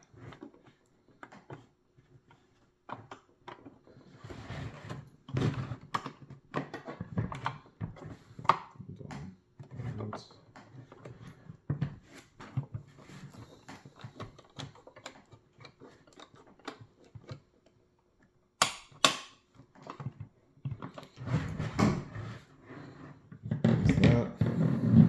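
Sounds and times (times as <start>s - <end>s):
rubbing and handling noise: 24.4s - 25.0s.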